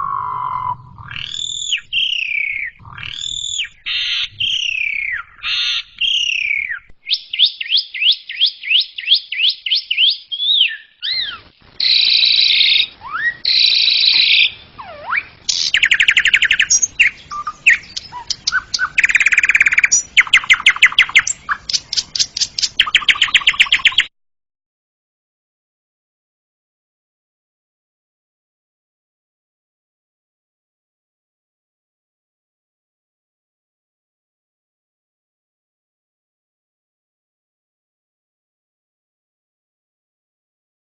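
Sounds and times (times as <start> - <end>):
starling singing: 0.0 - 24.1.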